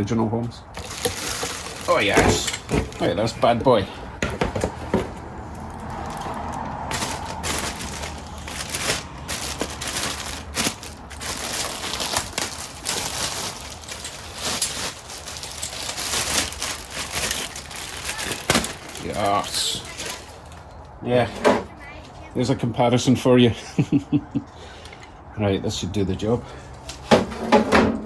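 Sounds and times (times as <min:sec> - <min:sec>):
packaging rustling and crinkling: 0:00.7 - 0:21.0.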